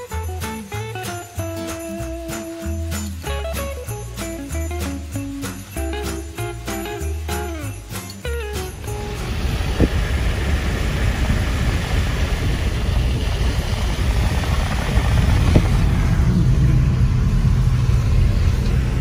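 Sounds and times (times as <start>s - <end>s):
car engine and road rumble: 0.0s - 19.0s
low hum: 8.4s - 19.0s.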